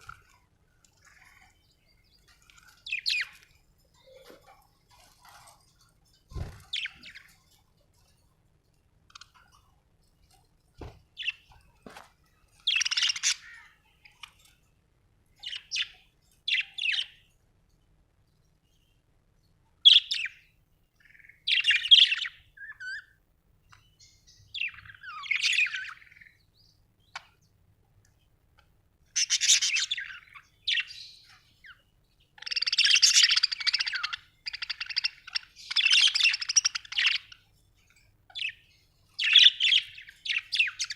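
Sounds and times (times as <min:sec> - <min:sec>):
budgerigar chirping: 0:32.4 - 0:37.3.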